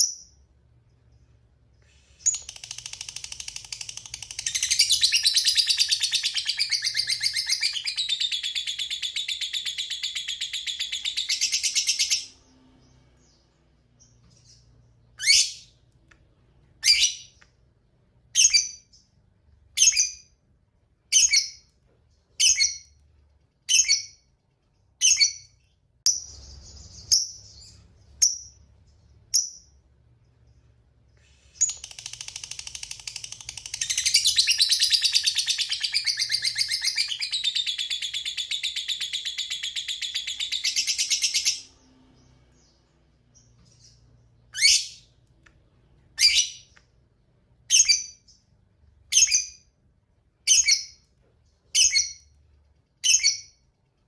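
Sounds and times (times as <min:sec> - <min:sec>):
lovebird chirping: 0:00.0 - 0:15.8, 0:16.8 - 0:17.4, 0:18.2 - 0:20.4, 0:21.1 - 0:23.0, 0:23.6 - 0:45.2, 0:46.0 - 0:46.8, 0:47.6 - 0:49.8, 0:50.4 - 0:52.4, 0:53.0 - 0:53.7
lovebird rapid chattering trill: 0:02.3 - 0:12.2, 0:31.6 - 0:41.6.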